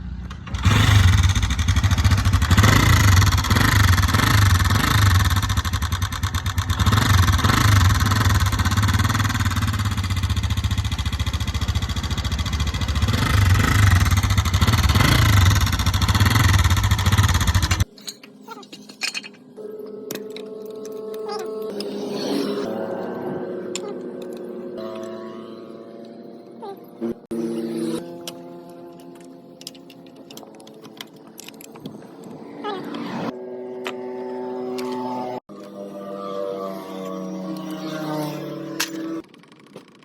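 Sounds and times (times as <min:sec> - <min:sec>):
motorcycle engine revving: 0:00.0 - 0:17.9, 0:32.6 - 0:39.8.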